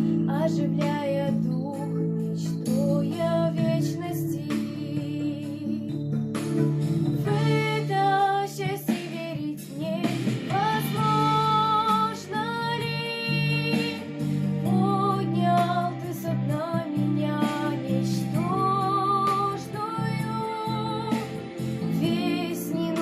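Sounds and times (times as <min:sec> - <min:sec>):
instrumental accompaniment: 0:00.0 - 0:23.0
woman singing with vibrato: 0:07.3 - 0:23.0.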